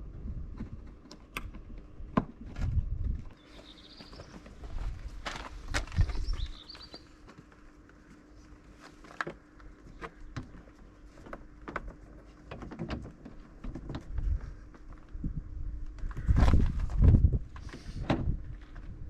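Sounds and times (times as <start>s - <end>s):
bird chirping: 3.4s - 4.5s, 6.0s - 7.2s.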